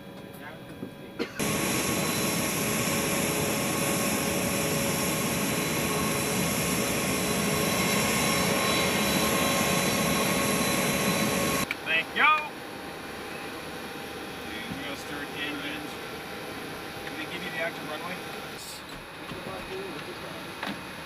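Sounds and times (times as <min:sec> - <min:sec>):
jet engines running: 0:01.3 - 0:21.0
high whining tones: 0:01.4 - 0:11.7.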